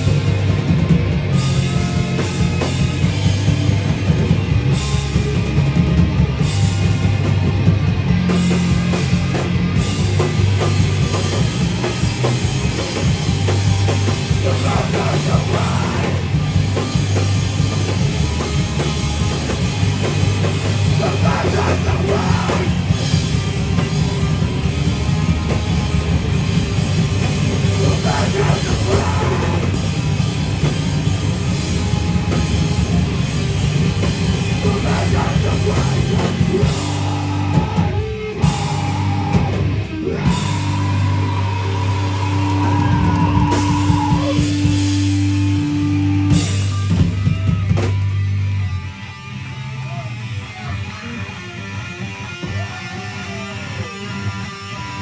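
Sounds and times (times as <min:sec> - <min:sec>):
heavy rock band playing: 0:00.0 - 0:55.0
shouted vocals: 0:14.2 - 0:16.4, 0:20.8 - 0:23.0, 0:27.5 - 0:29.9, 0:34.5 - 0:45.0.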